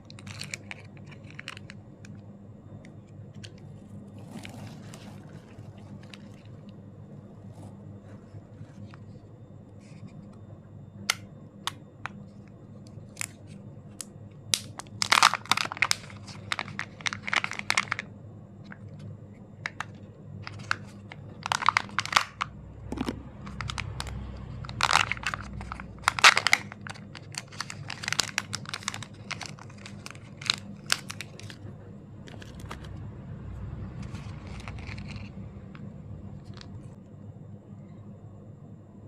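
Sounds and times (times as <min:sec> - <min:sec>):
low steady hum: 0:00.0 - 0:39.0
plastic foil wrapper crinkling: 0:14.5 - 0:18.1, 0:20.4 - 0:22.5, 0:23.5 - 0:31.6, 0:34.0 - 0:35.3.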